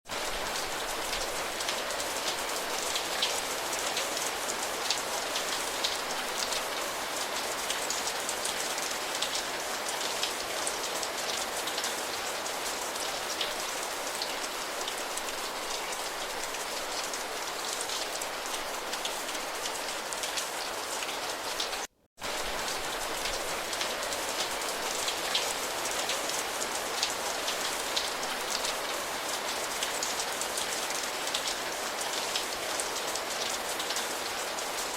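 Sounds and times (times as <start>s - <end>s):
steady rain: 0.0s - 34.9s.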